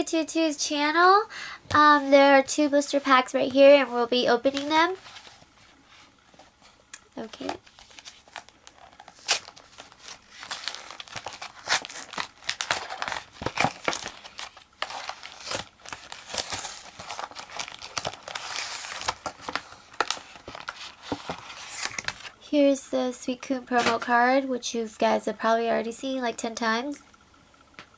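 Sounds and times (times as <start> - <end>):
packaging crinkling and tearing: 7.4 - 22.4.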